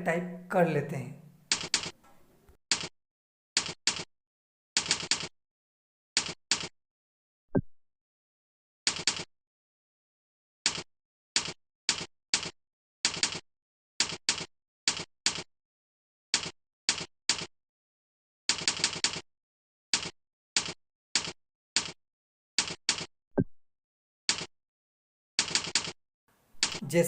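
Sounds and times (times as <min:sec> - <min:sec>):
keyboard keystrokes: 0:01.5 - 0:02.0.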